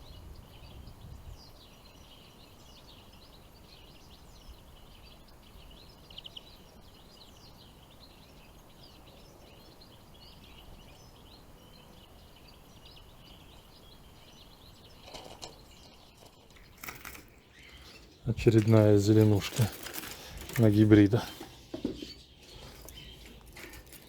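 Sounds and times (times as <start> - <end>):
songbirds chirping and twittering: 0.0 - 24.0.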